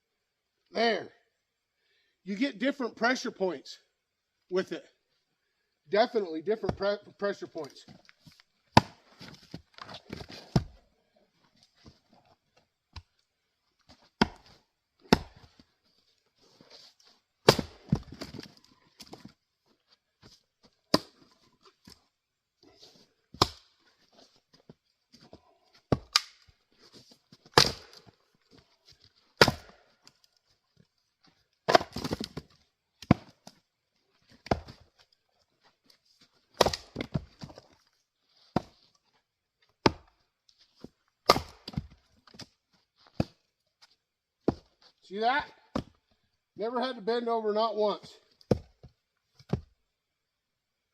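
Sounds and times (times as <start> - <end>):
wood pieces knocking and scuffing: 7.6 - 10.8, 16.4 - 19.4, 31.3 - 45.0
axe chopping firewood: 8.7 - 10.8, 13.9 - 15.6, 17.4 - 19.3, 20.9 - 22.0, 23.3 - 24.2, 25.1 - 26.5, 27.4 - 28.1, 29.4 - 30.2, 31.6 - 33.6, 34.3 - 35.0, 36.5 - 37.8, 38.5 - 38.9, 39.8 - 40.2, 41.2 - 42.5, 43.1 - 43.4, 45.7 - 46.0, 48.4 - 49.7.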